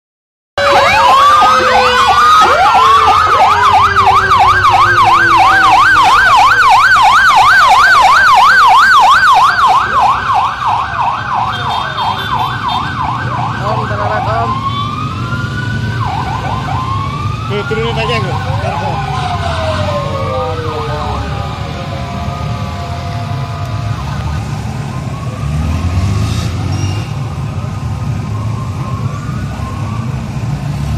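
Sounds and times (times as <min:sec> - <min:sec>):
low falling tone: 0:00.6 - 0:07.1
siren wailing: 0:00.6 - 0:30.8
heavy vehicle engines rumbling: 0:00.6 - 0:30.9
police sirens yelping: 0:00.6 - 0:30.9.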